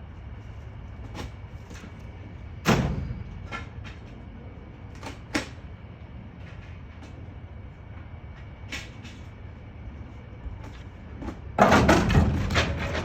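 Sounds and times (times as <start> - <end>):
debris crashing into a dumpster: 11.6 - 13.0.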